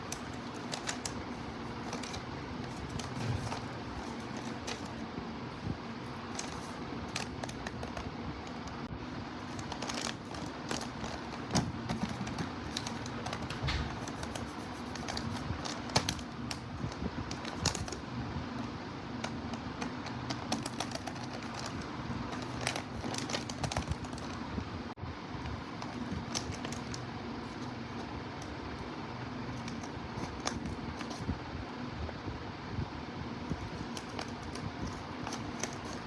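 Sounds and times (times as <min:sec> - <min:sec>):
hands crinkling paper bag: 0:00.0 - 0:05.0, 0:06.0 - 0:08.8, 0:09.4 - 0:16.7, 0:17.3 - 0:18.0, 0:19.8 - 0:24.4, 0:25.6 - 0:27.7, 0:33.5 - 0:36.0
steady low hum: 0:00.0 - 0:36.0.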